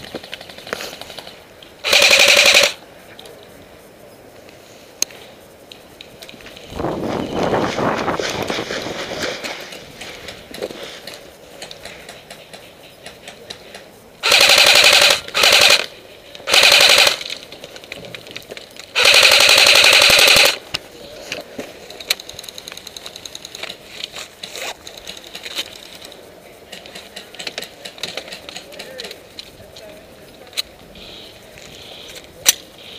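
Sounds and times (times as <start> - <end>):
airsoft gun automatic bursts: 0.2 - 2.8, 14.2 - 17.4, 18.9 - 20.6
faint clicks and rustling: 7.9 - 32.7.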